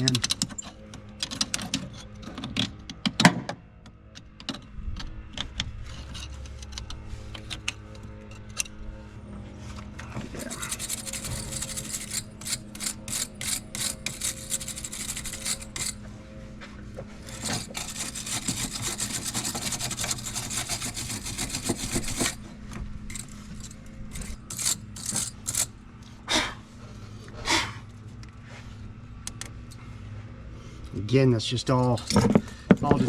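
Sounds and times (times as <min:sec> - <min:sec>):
wire brush scrubbing battery terminal: 0:10.4 - 0:16.0, 0:17.3 - 0:22.4, 0:23.1 - 0:25.7.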